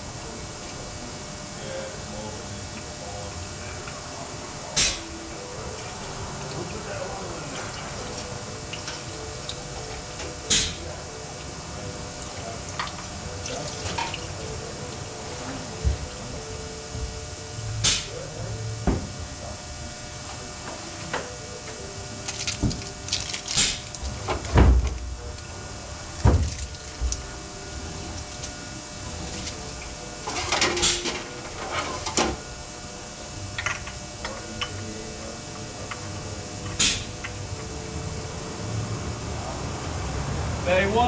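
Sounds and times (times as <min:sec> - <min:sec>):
steady hum: 0:00.0 - 0:41.0.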